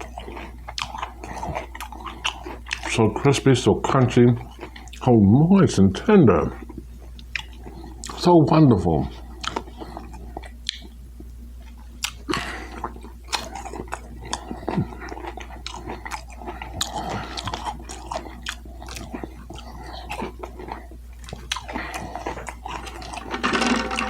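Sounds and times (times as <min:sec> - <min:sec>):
chewing crispy chicken: 0:00.0 - 0:23.4
wet mouth clicks: 0:10.4 - 0:11.4.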